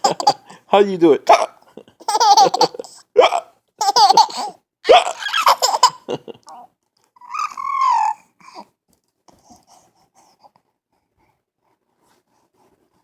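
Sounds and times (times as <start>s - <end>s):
baby laughing: 0.0s - 0.6s, 1.3s - 8.2s.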